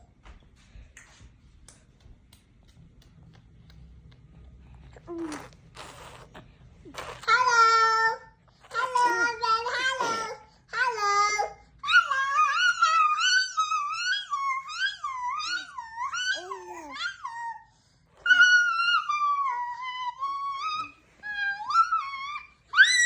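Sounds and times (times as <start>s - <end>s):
baby squealing: 18.3s - 23.0s.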